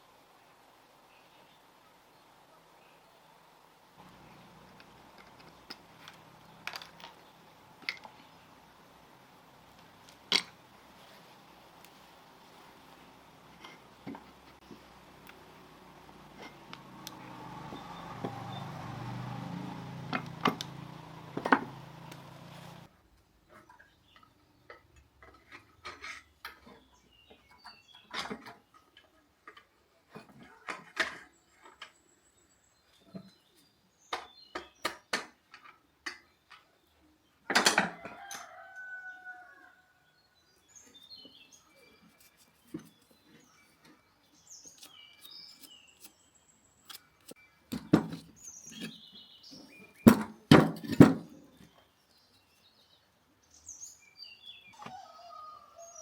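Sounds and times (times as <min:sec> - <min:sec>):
rooster crowing: 0:37.9 - 0:40.1, 0:54.8 - 0:56.0.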